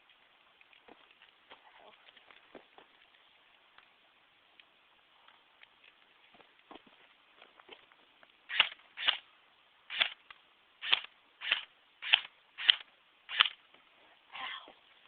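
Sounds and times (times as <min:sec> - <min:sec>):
airsoft gun single shots: 0:10.8 - 0:13.6.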